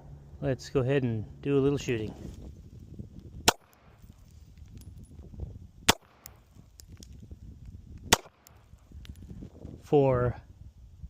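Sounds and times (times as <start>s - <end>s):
low steady rumble: 0.0s - 11.0s
pistol shots: 3.4s - 4.0s, 5.9s - 6.4s, 8.1s - 8.5s.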